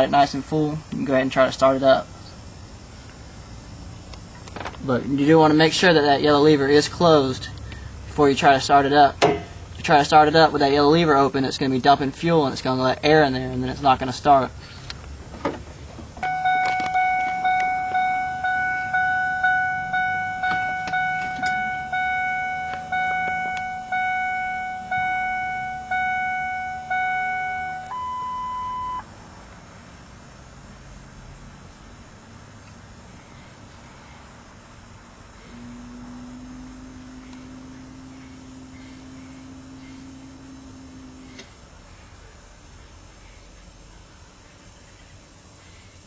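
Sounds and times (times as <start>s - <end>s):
fuel pump humming: 0.8s - 10.8s, 12.0s - 29.0s, 34.5s - 42.0s
dashboard warning chime dings: 16.2s - 29.1s
steady beep: 16.2s - 29.1s.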